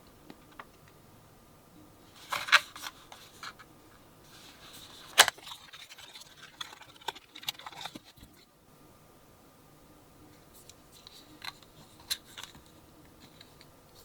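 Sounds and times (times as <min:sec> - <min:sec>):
packaging rustling: 0:02.2 - 0:03.6, 0:04.3 - 0:08.4.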